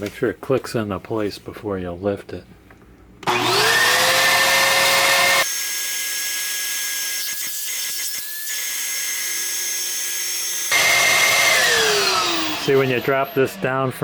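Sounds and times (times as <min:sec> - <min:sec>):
vacuum cleaner motor whining: 0:03.2 - 0:06.7, 0:10.3 - 0:14.0.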